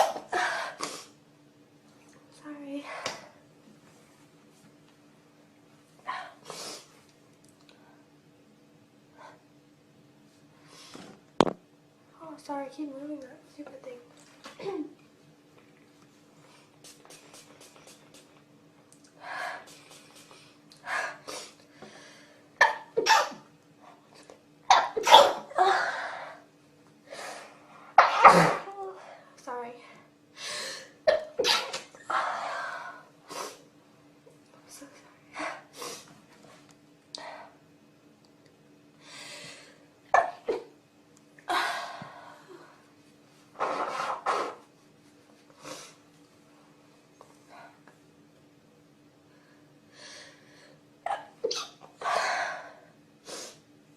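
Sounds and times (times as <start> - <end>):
person sneezing: 22.6 - 23.4, 24.7 - 25.6, 28.0 - 28.8, 31.1 - 31.9, 51.1 - 51.8
person coughing: 28.0 - 28.8.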